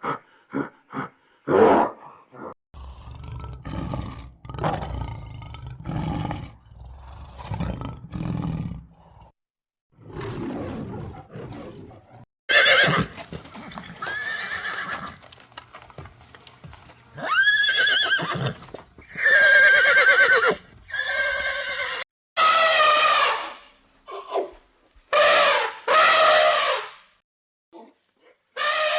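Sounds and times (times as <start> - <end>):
horses whinnying: 12.5 - 15.2, 17.2 - 23.3.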